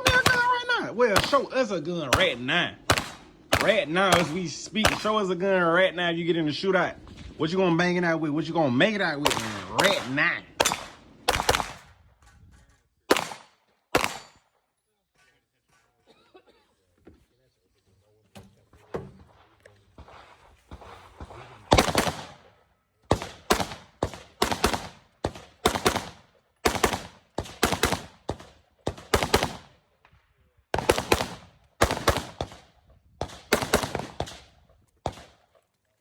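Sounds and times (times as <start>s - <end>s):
pistol gunshots: 0.0s - 5.3s, 9.2s - 12.0s, 13.1s - 14.5s, 20.0s - 29.8s, 30.7s - 35.4s.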